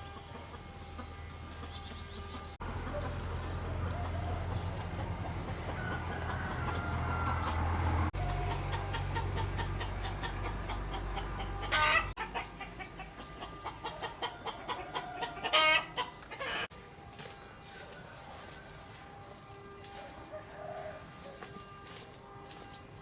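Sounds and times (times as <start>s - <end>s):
chickens clucking: 0.0s - 18.5s
chicken squawks: 8.2s - 16.7s.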